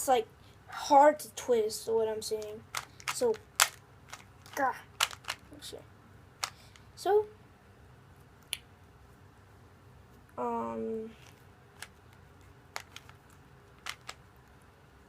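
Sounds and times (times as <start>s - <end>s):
plastic puzzle cube clicking: 2.4s - 5.5s, 12.7s - 14.2s.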